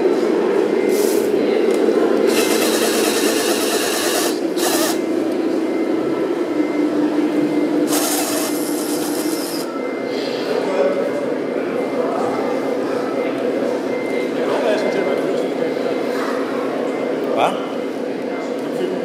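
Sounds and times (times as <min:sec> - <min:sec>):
small motor running: 0:02.3 - 0:05.0, 0:07.9 - 0:09.7.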